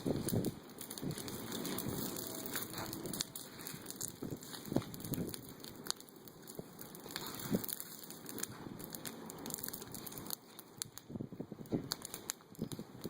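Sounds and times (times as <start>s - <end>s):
bonfire crackling and popping: 0.0s - 13.0s
rustle of flames: 0.0s - 13.0s.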